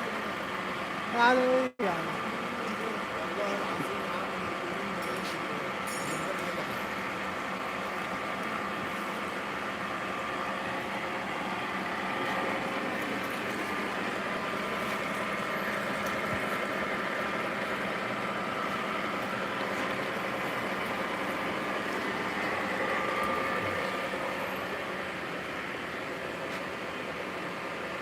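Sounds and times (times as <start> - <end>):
machine humming with faint whine: 6.7 - 28.0.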